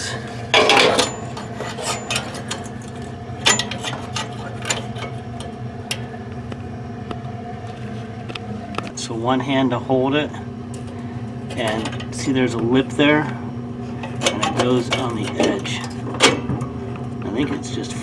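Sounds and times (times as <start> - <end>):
metal rubbing scrape: 0.0 - 2.8.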